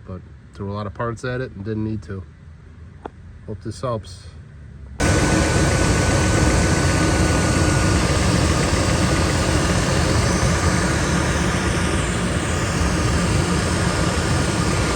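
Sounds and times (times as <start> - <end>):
truck engine idling: 5.0 - 14.9.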